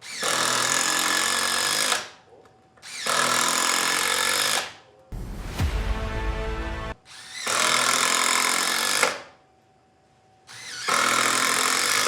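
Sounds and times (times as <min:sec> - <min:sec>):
cordless driver driving screws into wood: 0:02.8 - 0:04.7, 0:10.5 - 0:12.0.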